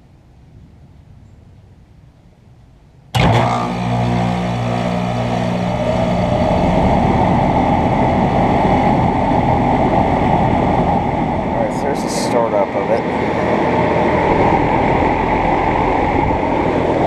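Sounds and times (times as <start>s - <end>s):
air conditioner unit hum: 3.2s - 17.0s
rush of air: 4.1s - 17.0s.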